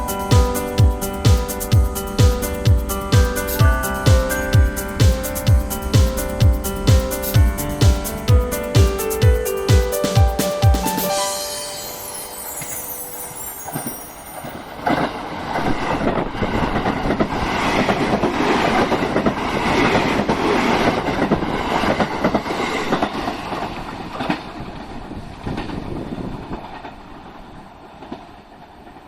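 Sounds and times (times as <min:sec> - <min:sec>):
train passing: 0:00.0 - 0:29.0
wheels clicking over rail joints: 0:14.4 - 0:29.0.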